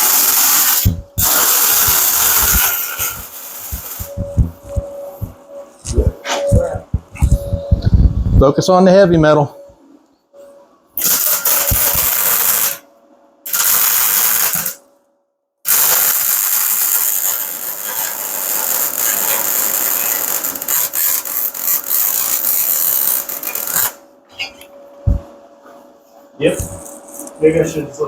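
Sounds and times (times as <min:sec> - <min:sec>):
welder arc sizzling and crackling: 0:00.0 - 0:05.4, 0:11.0 - 0:12.8, 0:13.5 - 0:14.8, 0:15.7 - 0:24.0.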